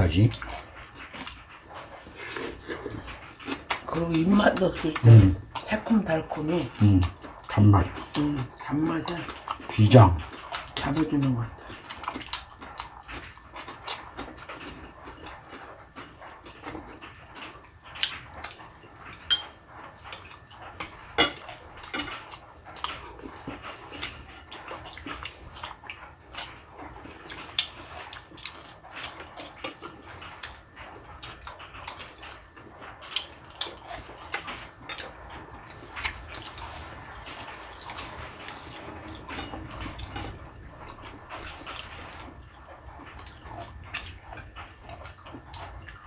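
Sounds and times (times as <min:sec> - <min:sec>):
utensils clinking against dishes: 0:19.1 - 0:22.4, 0:33.6 - 0:35.4, 0:36.3 - 0:40.4.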